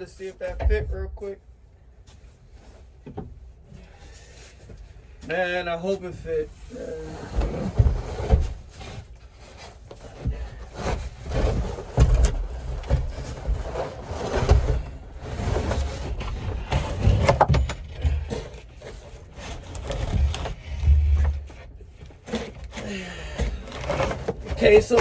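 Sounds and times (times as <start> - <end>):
rumbling handling noise: 0.4 - 5.3, 6.1 - 25.0
wood knocking and scraping: 7.3 - 25.0.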